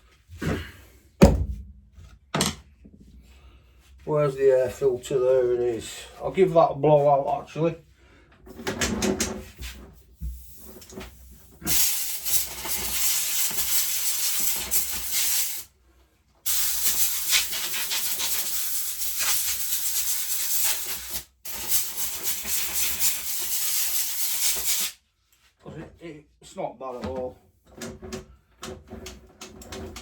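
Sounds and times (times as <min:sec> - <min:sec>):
compressed air hissing: 0:10.3 - 0:15.7, 0:16.5 - 0:25.0.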